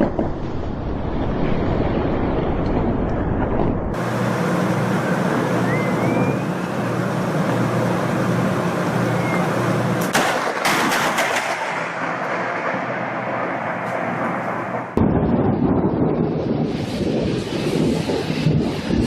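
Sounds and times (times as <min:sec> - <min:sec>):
lightning cracks: 0:00.0 - 0:04.2, 0:10.0 - 0:19.0
low hum: 0:00.0 - 0:10.1, 0:11.6 - 0:19.0
steady rushing noise: 0:00.0 - 0:19.0.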